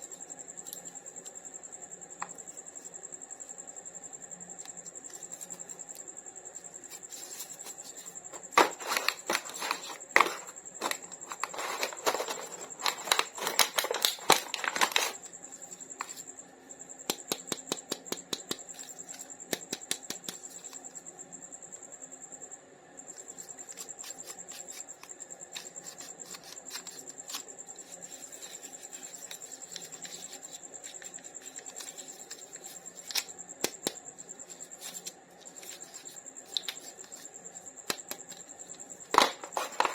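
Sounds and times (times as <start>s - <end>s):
plastic packaging crinkling: 7.4s - 15.3s, 39.1s - 39.9s.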